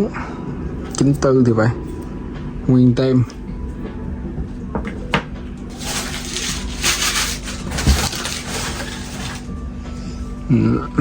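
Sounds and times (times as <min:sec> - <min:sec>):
steady low hum: 0:00.0 - 0:11.0
packaging rustling: 0:05.6 - 0:09.5.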